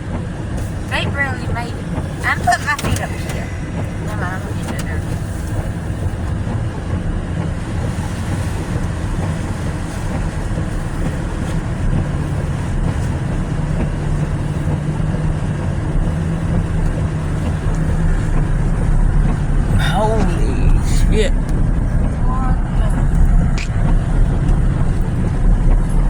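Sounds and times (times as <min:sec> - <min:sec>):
car engine and road rumble: 0:00.0 - 0:26.0
low hum: 0:17.6 - 0:26.0.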